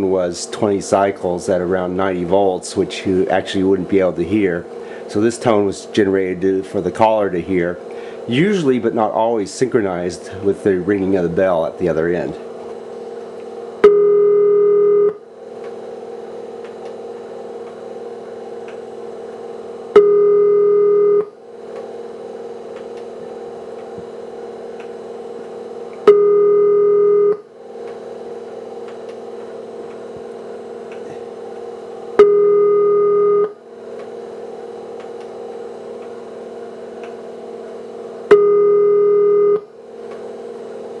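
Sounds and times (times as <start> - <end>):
steady quiet hum: 0.0 - 41.0
buzzy telephone ringback tone: 13.8 - 15.2, 20.0 - 21.3, 26.1 - 27.4, 32.2 - 33.6, 38.3 - 39.6.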